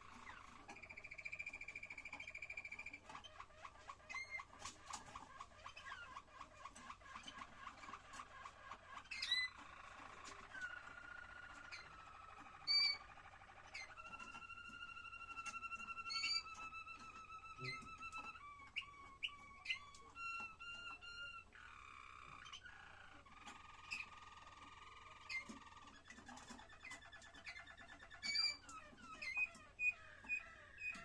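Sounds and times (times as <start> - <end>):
sharp bird chirps: 0.0 - 3.5, 7.0 - 31.0
canary singing: 0.0 - 31.0.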